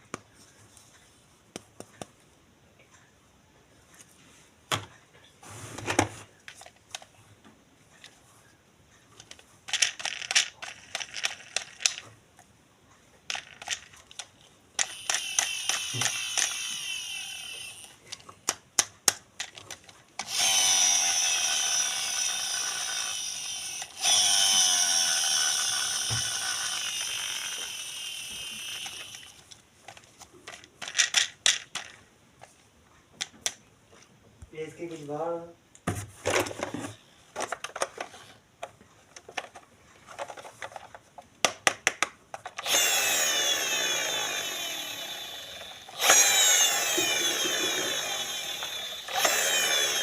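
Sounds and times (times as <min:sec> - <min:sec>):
plastic toy parts clicking and rattling: 0:06.4 - 0:07.2, 0:09.2 - 0:12.2, 0:13.3 - 0:32.6, 0:37.4 - 0:50.0
toy motor whirring: 0:09.2 - 0:12.1, 0:13.3 - 0:18.2, 0:19.4 - 0:32.0, 0:42.5 - 0:50.0.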